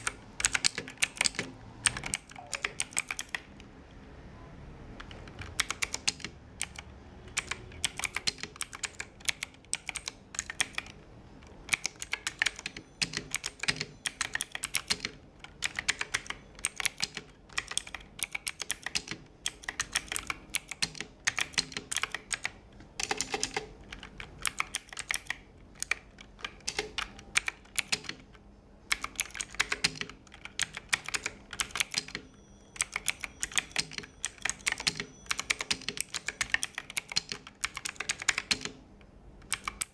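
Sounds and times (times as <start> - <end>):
mechanical keyboard typing: 0.0 - 3.7, 4.9 - 39.9.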